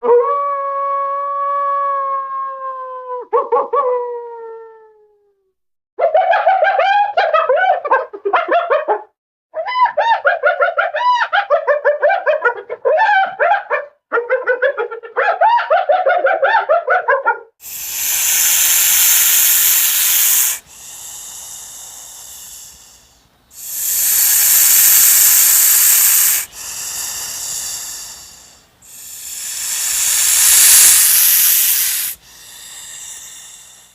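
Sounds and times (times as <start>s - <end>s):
creature chattering and chirping: 17.6s - 33.9s
creature hissing: 17.6s - 33.9s
quiet breathy hiss: 17.6s - 33.9s.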